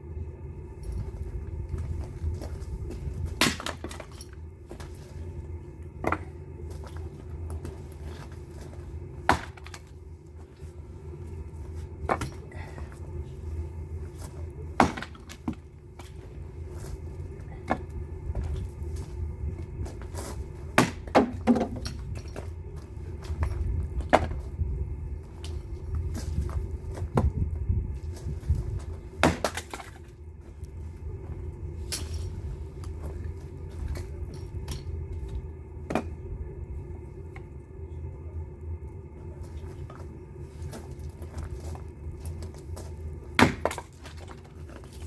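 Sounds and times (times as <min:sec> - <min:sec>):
steady low rumble: 0:00.0 - 0:45.0
firewood cracking and knocking: 0:01.7 - 0:05.2, 0:05.8 - 0:10.6, 0:11.6 - 0:12.7, 0:14.2 - 0:19.2, 0:19.8 - 0:24.6, 0:28.1 - 0:34.9, 0:39.4 - 0:45.0.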